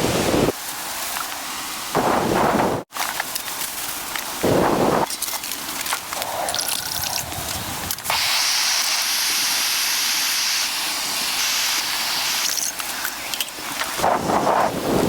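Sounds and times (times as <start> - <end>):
steady hiss: 7.3 - 15.0.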